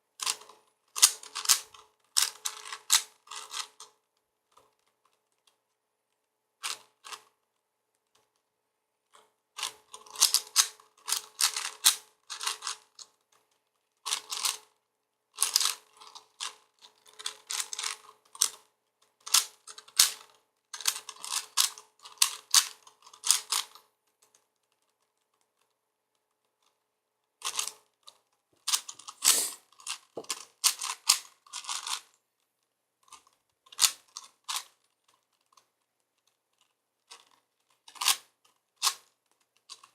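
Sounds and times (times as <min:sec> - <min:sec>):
puzzle cube clicking: 0:28.6 - 0:32.1.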